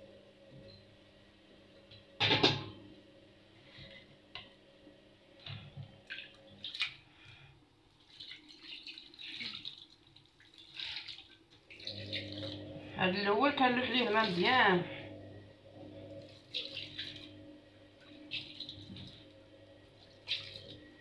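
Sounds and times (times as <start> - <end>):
water pouring and splashing: 6.0 - 7.1, 7.9 - 12.8, 13.9 - 14.6, 16.2 - 17.4, 18.1 - 21.0.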